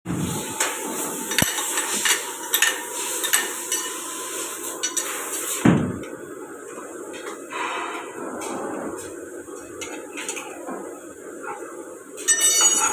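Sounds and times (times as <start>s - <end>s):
machine hiss: 0.1s - 6.1s.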